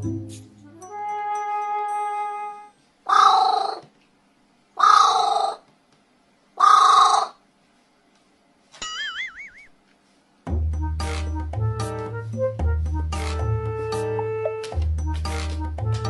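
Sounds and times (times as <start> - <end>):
crow cawing: 3.1 - 3.8, 4.8 - 5.6, 6.6 - 7.4.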